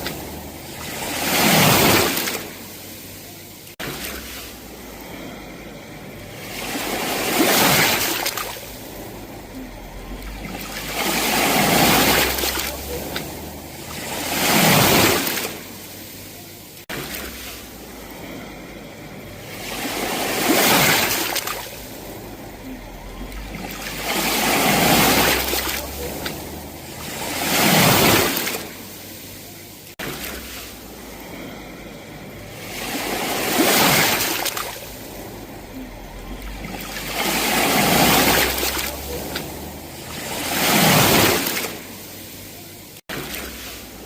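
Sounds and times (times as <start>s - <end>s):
sea waves breaking on shore: 0.0s - 44.0s.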